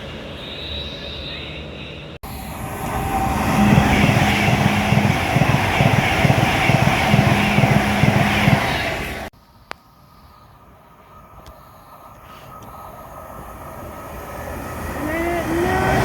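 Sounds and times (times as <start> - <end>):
train passing at speed: 0.0 - 9.3, 10.2 - 16.0
wheels beating over rail joints: 2.2 - 9.3.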